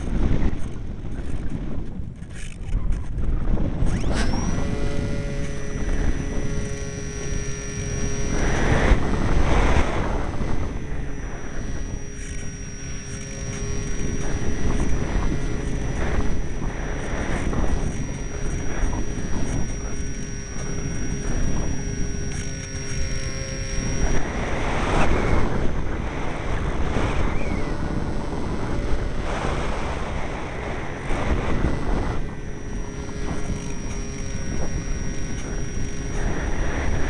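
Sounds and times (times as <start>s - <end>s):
steady high whine: 0.0s - 37.0s
wind buffeting microphone: 0.0s - 37.0s.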